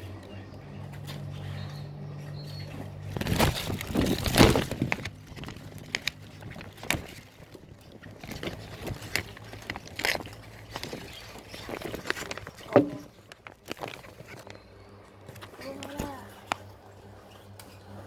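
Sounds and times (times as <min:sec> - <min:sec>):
rattling and knocking: 0:02.9 - 0:14.0
sharp knocks and bangs: 0:12.7 - 0:13.2.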